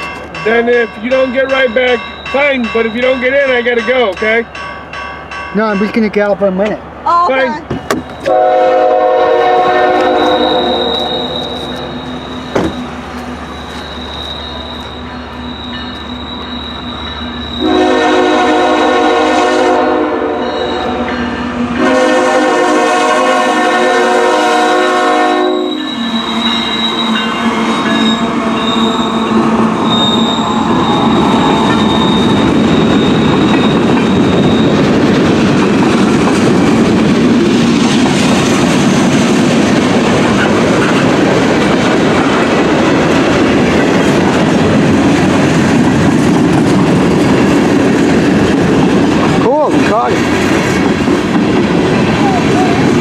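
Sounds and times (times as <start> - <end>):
train wheels rumbling on rail: 0.0 - 53.0
locomotive horn blasts: 8.2 - 12.0, 17.6 - 21.1, 21.8 - 29.3.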